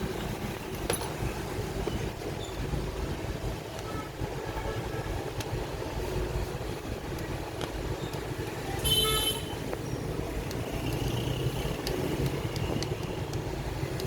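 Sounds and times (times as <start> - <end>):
road traffic rumble: 0.0 - 14.0
vehicle horn toot: 8.8 - 9.6.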